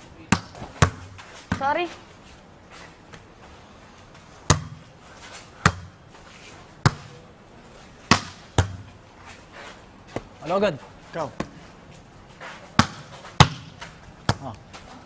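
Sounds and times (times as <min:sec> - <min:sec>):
volleyball being hit: 0:00.3 - 0:01.8, 0:04.5 - 0:04.8, 0:05.6 - 0:06.0, 0:06.8 - 0:07.2, 0:08.1 - 0:08.9, 0:10.1 - 0:10.4, 0:11.4 - 0:11.6, 0:12.8 - 0:14.6.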